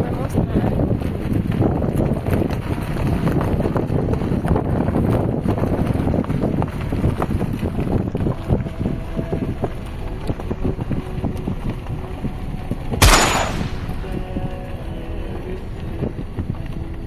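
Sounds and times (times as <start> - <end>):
wind buffeting microphone: 0.0 - 17.0
steady low rumble: 3.6 - 17.0.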